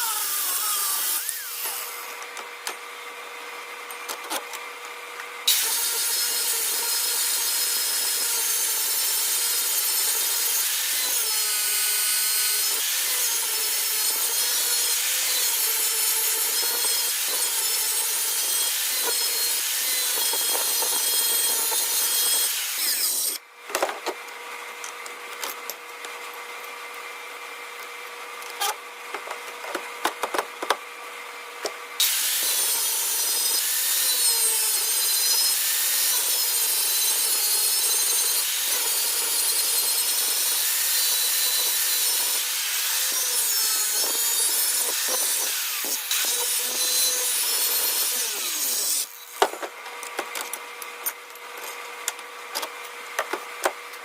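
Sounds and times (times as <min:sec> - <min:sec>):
power tool grinding: 0:00.0 - 0:02.8, 0:05.5 - 0:23.4, 0:32.0 - 0:53.7.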